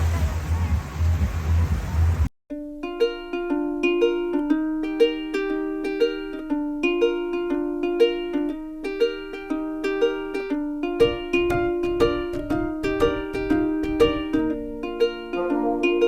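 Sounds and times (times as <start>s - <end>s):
low beat: 0.0s - 2.3s, 10.1s - 16.0s
plucked ukulele melody: 2.5s - 16.0s.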